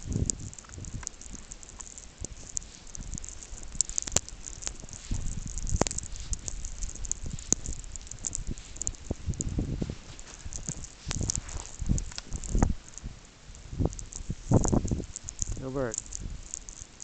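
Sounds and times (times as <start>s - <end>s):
sharp clicks: 0.0s - 9.6s, 10.2s - 17.0s
small ticks: 0.0s - 17.0s
footsteps crunching through snow: 2.4s - 12.8s.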